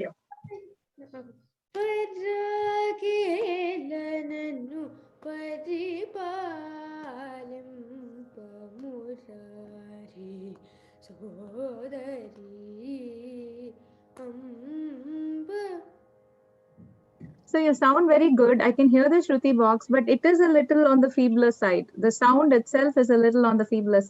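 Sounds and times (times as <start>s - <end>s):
woman singing: 0.5s - 15.9s.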